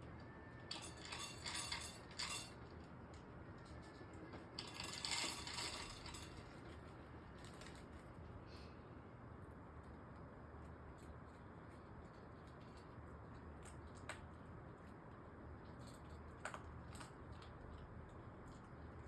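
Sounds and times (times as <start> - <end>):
small hard objects clinking: 0.7 - 2.6, 3.7 - 6.8.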